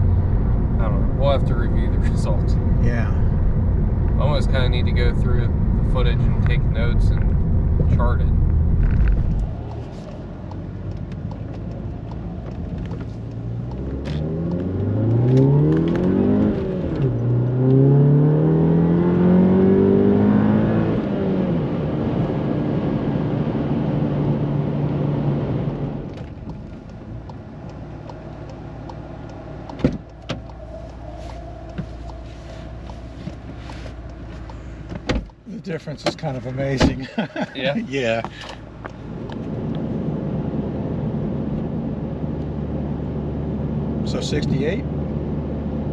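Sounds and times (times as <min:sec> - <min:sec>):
car engine accelerating hard: 0:00.0 - 0:35.0.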